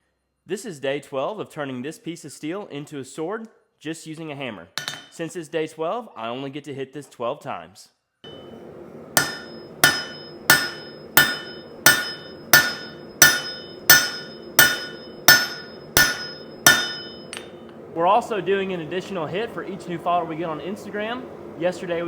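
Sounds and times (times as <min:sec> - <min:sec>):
hammer striking steel bar: 0:08.3 - 0:08.6, 0:09.2 - 0:17.6.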